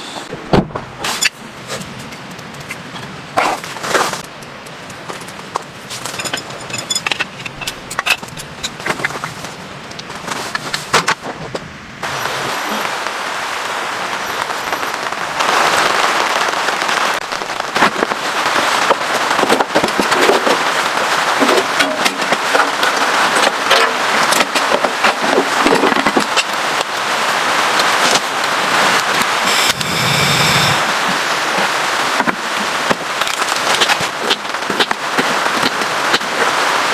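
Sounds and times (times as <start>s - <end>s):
heavy rain rushing: 0.0s - 36.9s
raindrops ticking on surface: 1.8s - 10.9s, 12.0s - 29.9s, 30.9s - 36.9s
scattered clicks and knocks: 2.0s - 11.7s.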